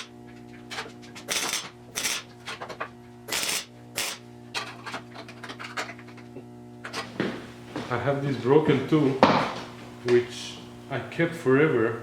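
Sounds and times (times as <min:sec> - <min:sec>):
steady low hum: 0:00.0 - 0:12.0
hand tools scraping steel: 0:01.3 - 0:02.3, 0:03.3 - 0:04.2.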